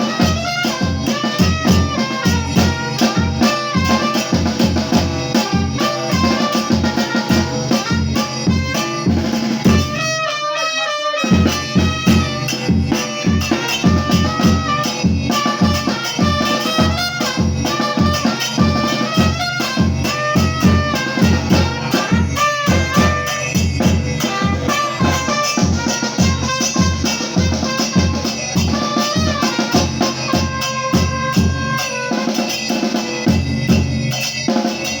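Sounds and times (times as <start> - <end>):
bass drum beat: 11.4 - 31.8.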